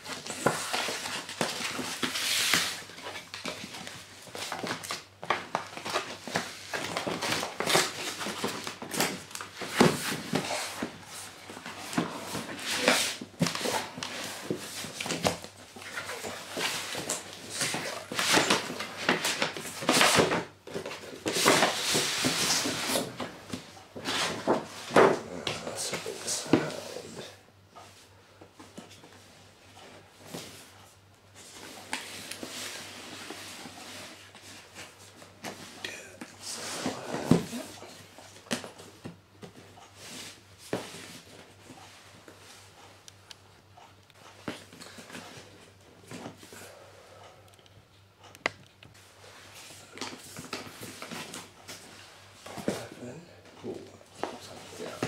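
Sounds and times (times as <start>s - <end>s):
cardboard rustling and scraping: 0.0s - 27.1s.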